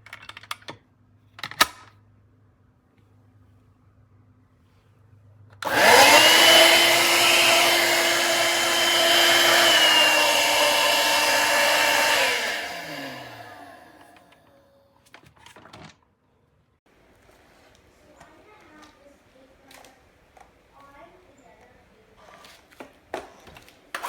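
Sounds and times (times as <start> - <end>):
cordless vacuum motor whine: 5.6 - 14.5.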